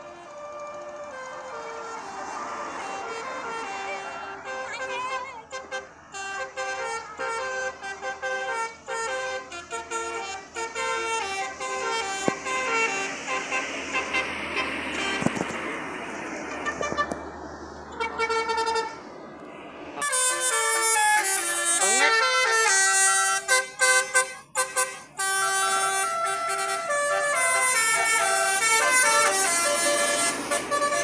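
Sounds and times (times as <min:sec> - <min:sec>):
musical horn playing a tune: 0:00.0 - 0:15.3, 0:17.9 - 0:19.0, 0:20.0 - 0:31.0
rushing noise: 0:00.1 - 0:08.2, 0:09.4 - 0:21.9, 0:26.0 - 0:31.0.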